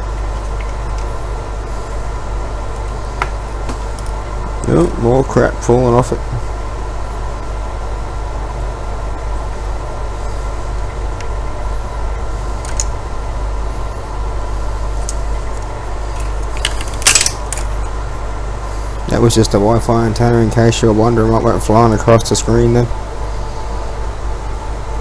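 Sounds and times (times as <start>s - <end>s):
low background hum: 0.0s - 25.0s
faint handling clicks: 12.6s - 13.0s, 15.0s - 18.0s
antenna breaking clatter: 15.0s - 18.0s.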